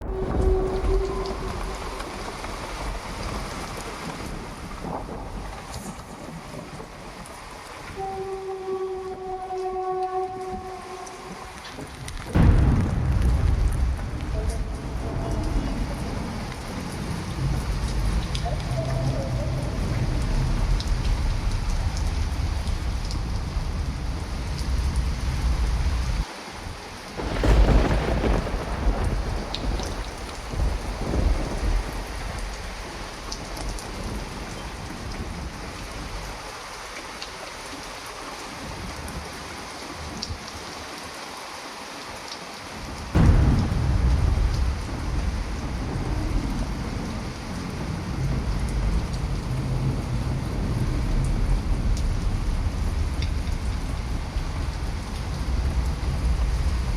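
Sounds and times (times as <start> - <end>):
sharp thunderclap: 0.0 - 6.8, 12.3 - 18.4, 27.2 - 34.4, 43.2 - 56.9
rolling thunder: 0.0 - 7.6, 10.6 - 26.2, 27.2 - 36.2, 43.1 - 56.9
heavy rain: 0.0 - 56.9.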